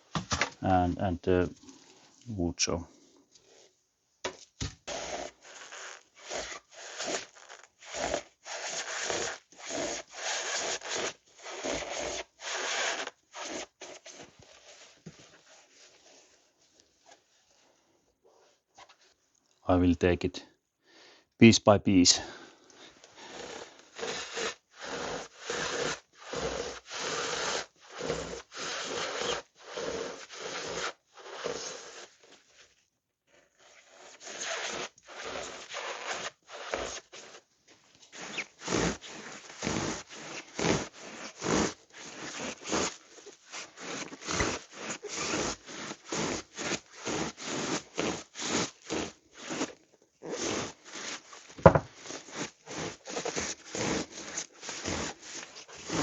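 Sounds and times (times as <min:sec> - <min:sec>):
hand saw rasping through foam: 0:04.7 - 0:16.5, 0:22.7 - 0:32.7, 0:33.3 - 0:56.0.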